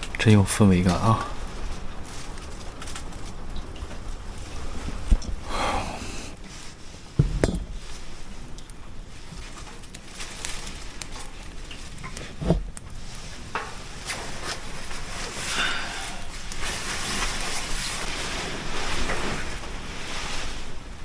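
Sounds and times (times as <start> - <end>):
light rain hissing: 0.0 - 21.0
dull knocks: 7.2 - 7.8.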